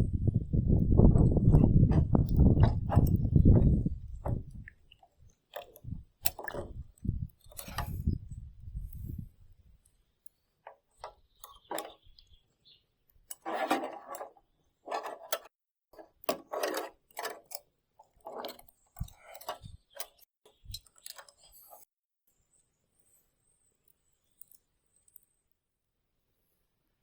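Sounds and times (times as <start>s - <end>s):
hand tool scraping: 7.5s - 8.2s, 13.3s - 21.9s.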